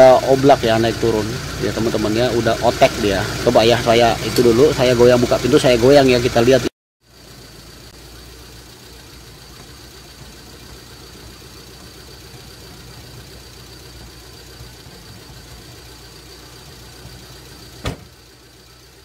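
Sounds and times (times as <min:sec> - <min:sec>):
car engine idling: 0:00.0 - 0:19.0
sharp knock: 0:17.8 - 0:18.1.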